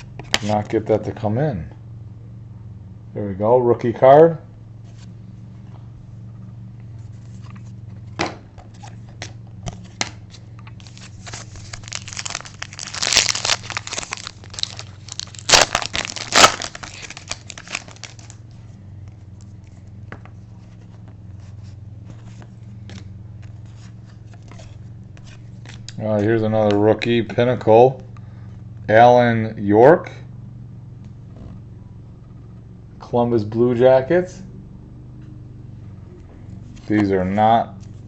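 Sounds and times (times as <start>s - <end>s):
steady low hum: 0.0s - 38.0s
plastic packaging crinkling: 10.8s - 18.4s.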